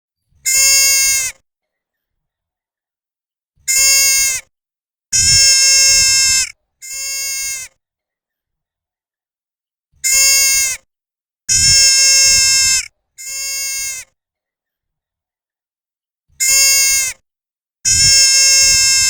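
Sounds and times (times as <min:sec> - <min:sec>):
deer fawn bleating: 0:05.2 - 0:07.7, 0:11.5 - 0:14.0, 0:17.9 - 0:19.0.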